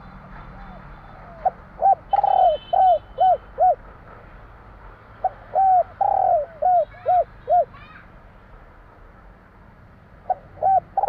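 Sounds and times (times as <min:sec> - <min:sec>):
dove cooing: 0:00.5 - 0:03.8, 0:05.2 - 0:07.8, 0:10.3 - 0:11.0.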